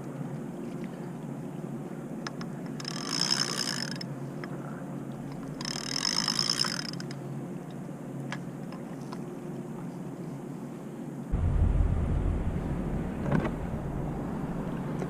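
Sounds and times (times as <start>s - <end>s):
water: 0.0s - 15.0s
wind: 0.0s - 15.0s
fishing reel ratchet clicking: 2.8s - 4.1s, 5.6s - 7.2s.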